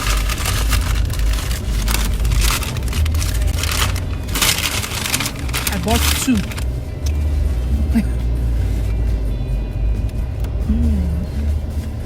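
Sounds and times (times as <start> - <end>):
rushing noise: 0.0 - 6.7
car engine and road rumble: 0.0 - 12.0.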